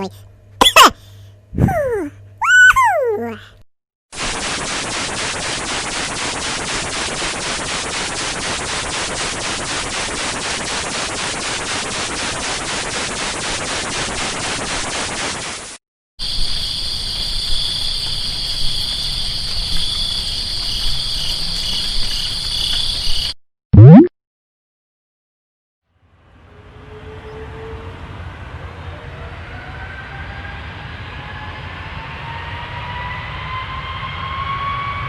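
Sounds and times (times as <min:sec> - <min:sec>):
dense noise with rapid pulses: 0:04.2 - 0:15.8.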